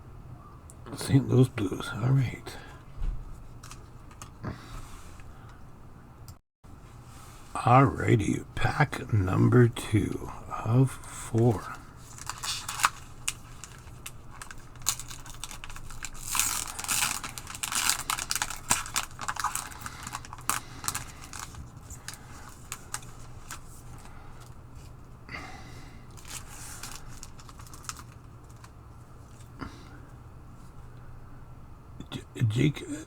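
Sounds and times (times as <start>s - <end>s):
card pack wrapper tearing: 11.4s - 24.1s, 26.1s - 28.7s.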